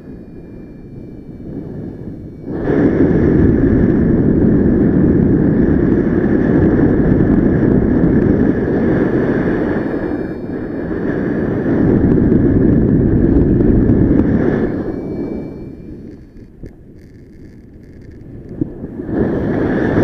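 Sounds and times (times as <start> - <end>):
wind rushing over microphone: 0.0 - 20.0.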